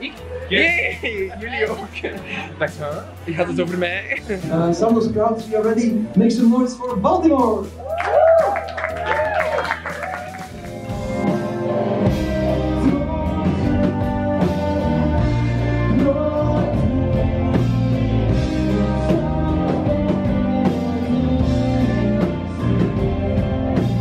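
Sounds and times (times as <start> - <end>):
drum kit: 0.0 - 24.0
guitar: 0.0 - 24.0
person singing: 11.0 - 24.0.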